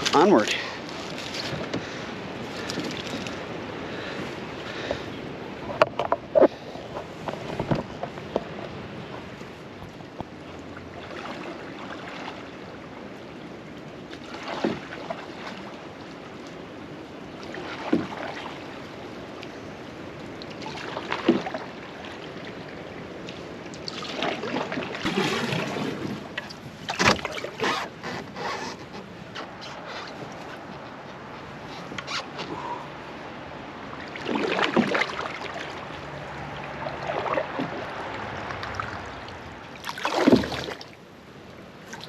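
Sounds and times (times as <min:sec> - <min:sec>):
water splashing: 0:00.0 - 0:05.8, 0:14.1 - 0:16.6, 0:17.4 - 0:19.2, 0:20.3 - 0:30.8, 0:31.6 - 0:42.0
paddle strokes swishing in water: 0:00.0 - 0:42.0.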